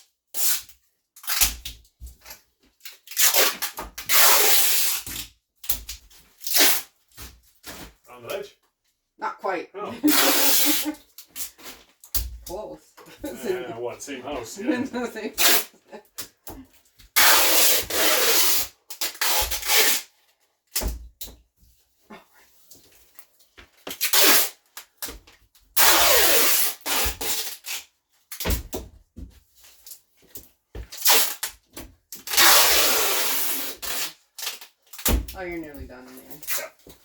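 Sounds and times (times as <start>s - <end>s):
tape pulled off a roll: 0.3s - 7.9s, 10.1s - 12.4s, 15.4s - 16.3s, 17.1s - 21.0s, 23.8s - 25.2s, 25.8s - 28.8s, 30.9s - 35.4s.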